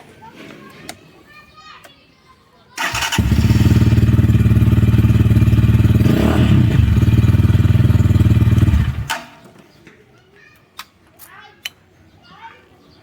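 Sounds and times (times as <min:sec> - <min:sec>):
motorcycle engine running: 0:02.8 - 0:09.2.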